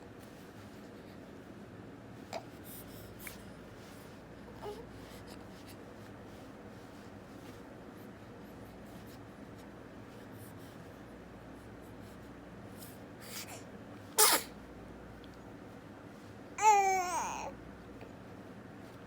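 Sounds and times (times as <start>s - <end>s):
baby sneezing: 14.2s - 14.6s
baby crying: 16.6s - 17.5s.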